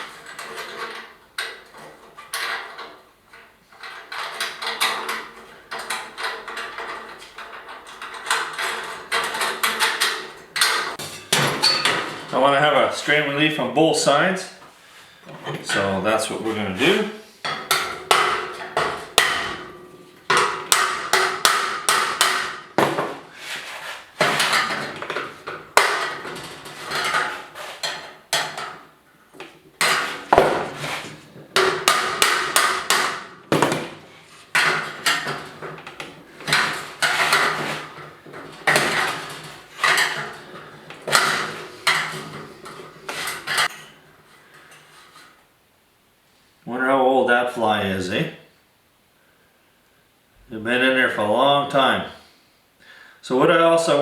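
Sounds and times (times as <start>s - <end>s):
metal ringing: 10.6s - 12.3s
hammer striking sheet metal: 17.4s - 23.2s, 29.8s - 34.0s.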